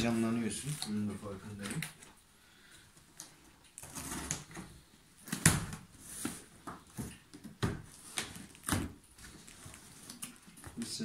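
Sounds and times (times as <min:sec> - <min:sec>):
cardboard scraping and rustling: 0:03.8 - 0:04.7.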